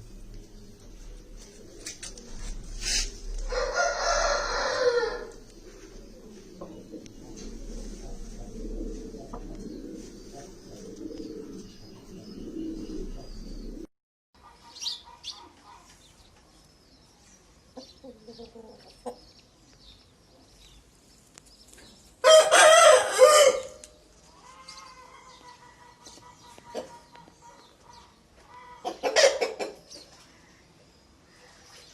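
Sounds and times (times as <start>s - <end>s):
low rumbling hum: 0.0s - 13.9s
soft clucks and calls: 0.1s - 13.8s, 22.3s - 30.4s
rooster crowing: 3.4s - 6.2s, 22.2s - 23.8s.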